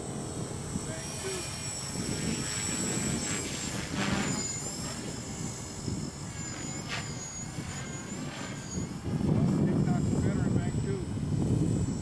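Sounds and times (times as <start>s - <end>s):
rc helicopter motor whine: 0.0s - 12.0s.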